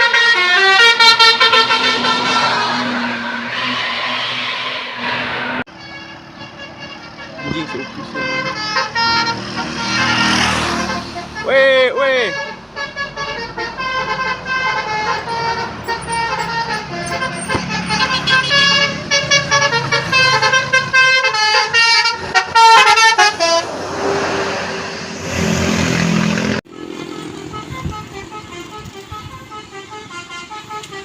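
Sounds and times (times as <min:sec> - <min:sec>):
multi-tone air horn melody: 0:00.0 - 0:23.7, 0:26.7 - 0:31.0.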